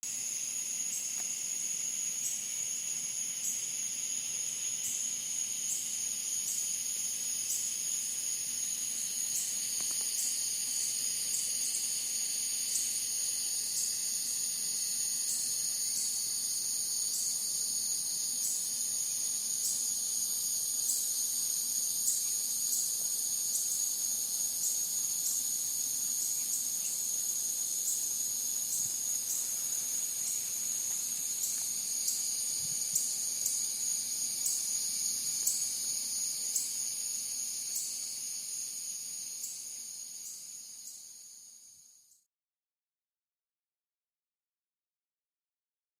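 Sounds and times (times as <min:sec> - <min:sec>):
cicadas droning: 0:00.0 - 0:42.3.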